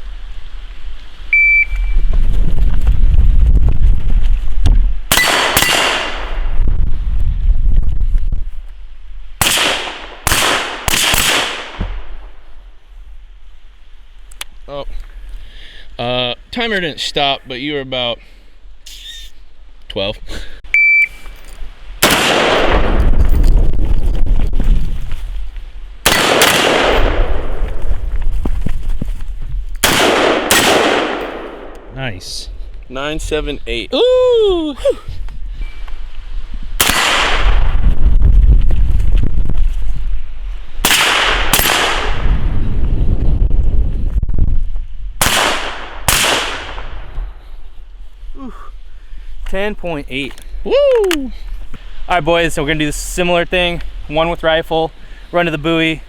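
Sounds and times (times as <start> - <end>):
gunshots: 5.1 - 6.4, 9.4 - 12.1, 22.0 - 23.3, 26.0 - 27.6, 29.8 - 31.8, 36.8 - 37.7, 40.8 - 42.3, 45.2 - 47.0
steady low rumble: 19.4 - 56.0.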